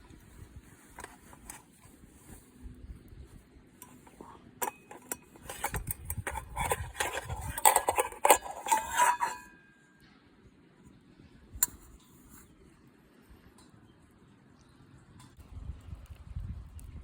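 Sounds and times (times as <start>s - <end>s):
metal objects clinking: 3.8s - 9.6s.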